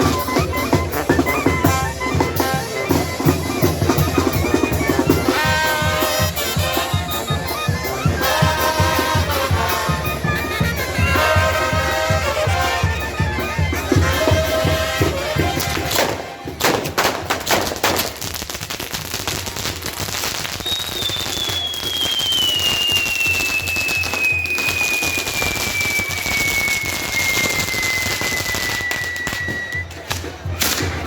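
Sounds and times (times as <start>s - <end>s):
brass band music: 0.0s - 18.2s
firecracker bangs: 14.1s - 31.0s
whistle gliding down in pitch: 20.5s - 30.0s.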